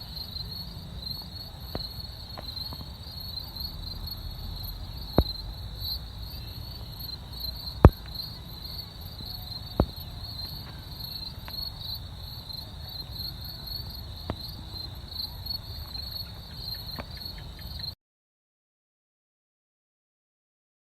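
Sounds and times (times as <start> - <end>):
crickets chirping: 0.0 - 18.0.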